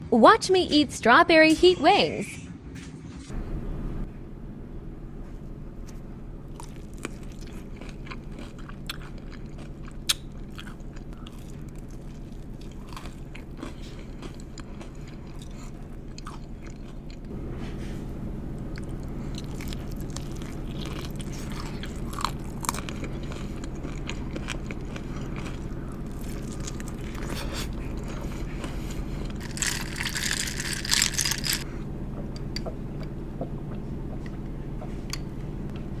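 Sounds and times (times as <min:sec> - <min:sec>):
low hum: 0:00.0 - 0:36.0
chewing and biting chicken wings: 0:06.5 - 0:17.4, 0:18.6 - 0:32.7.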